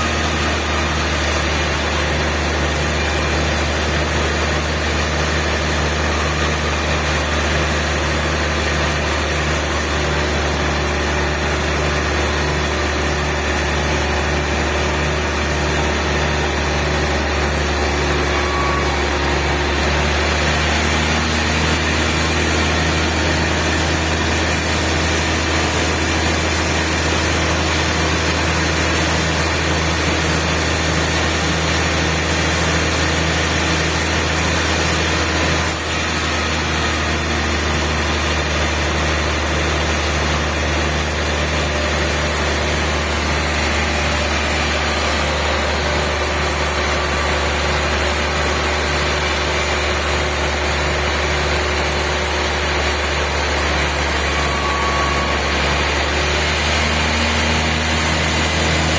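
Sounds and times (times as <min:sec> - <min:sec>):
sawmill machinery humming: 0:00.0 - 0:58.9.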